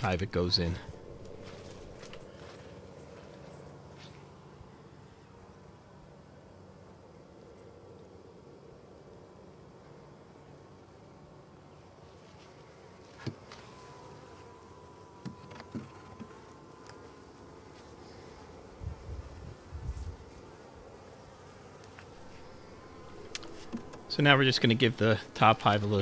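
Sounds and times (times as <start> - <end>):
bees buzzing: 0.0 - 2.3, 21.1 - 26.0
clicks and knocks from hive: 0.1 - 2.3, 22.0 - 26.0.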